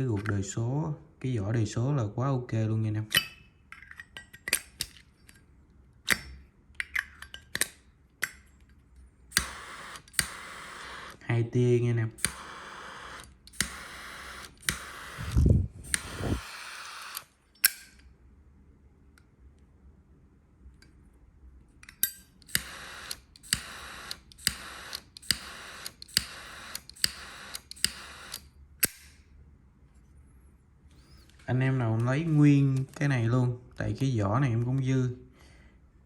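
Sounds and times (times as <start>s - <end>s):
torch jet hissing: 14.6s - 17.2s.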